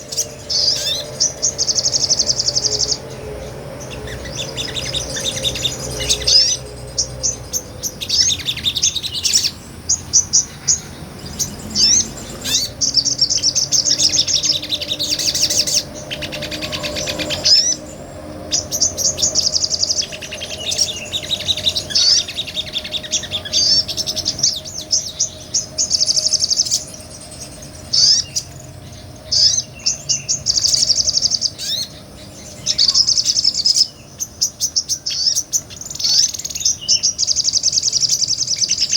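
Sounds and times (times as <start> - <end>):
songbird chirping and trilling: 0.0 - 38.9.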